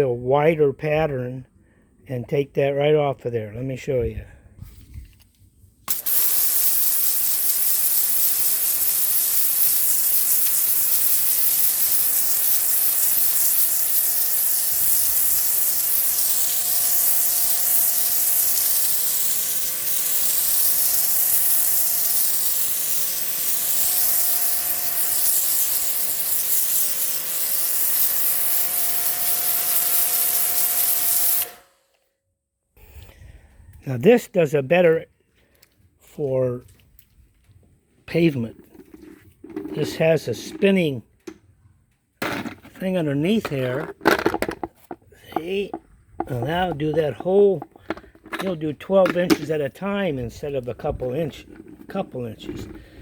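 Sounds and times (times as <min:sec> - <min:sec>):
pressure washer jet hissing: 0:05.9 - 0:31.7, 0:44.6 - 0:48.5.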